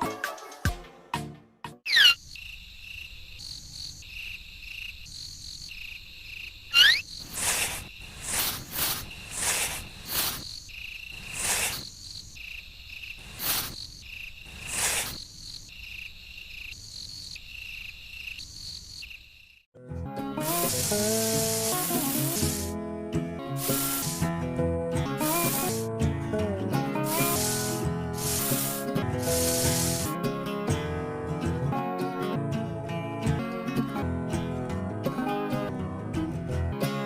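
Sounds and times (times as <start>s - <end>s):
insect chirping: 1.9s - 19.7s, 20.6s - 22.7s, 23.6s - 24.3s, 27.1s - 30.1s
short noisy swishes: 6.8s - 10.6s, 11.2s - 11.9s.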